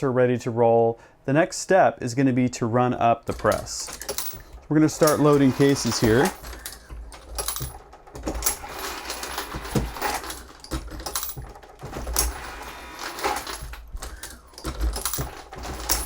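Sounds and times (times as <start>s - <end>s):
feeders running: 3.2s - 16.0s
metallic clunks and clinks: 3.3s - 16.0s.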